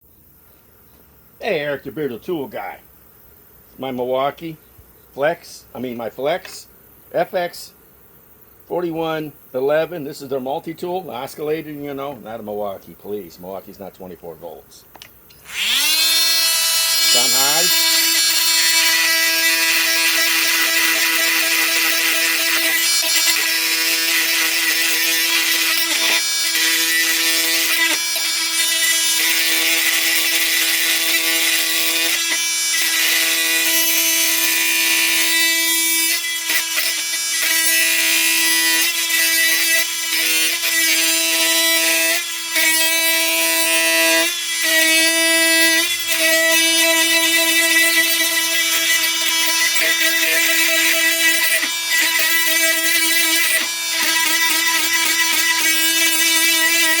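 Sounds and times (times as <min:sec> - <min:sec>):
blade grinding through metal: 0:15.3 - 0:57.0
oscillating multi-tool buzzing: 0:15.3 - 0:57.0.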